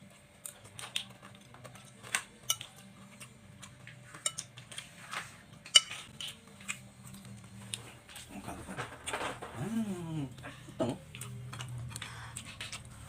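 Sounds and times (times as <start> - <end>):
metal cutlery clinking on a dish: 1.6 - 3.2, 4.1 - 4.8, 5.6 - 6.4.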